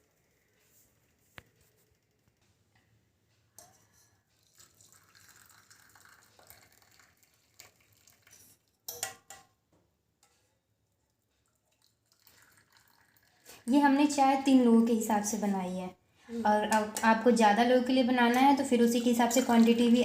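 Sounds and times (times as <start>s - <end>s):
tea being poured: 4.4s - 8.9s, 11.4s - 13.7s, 18.6s - 20.0s
cups clinking: 18.3s - 20.0s.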